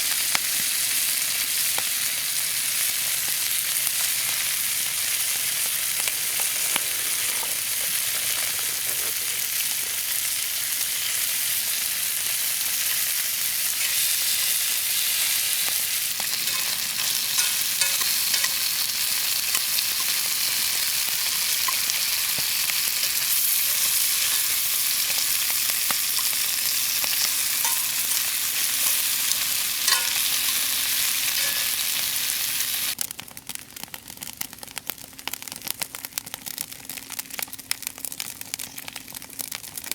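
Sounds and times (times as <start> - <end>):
meat sizzling over campfire: 0.0 - 39.9
small pops and crackles: 5.3 - 9.9, 32.9 - 39.9.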